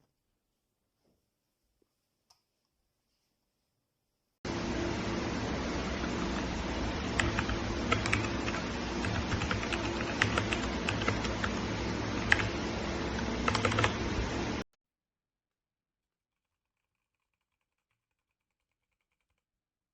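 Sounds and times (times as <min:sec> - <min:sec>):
low hum and hiss: 0:04.5 - 0:14.6
mechanical keyboard typing: 0:07.1 - 0:14.0.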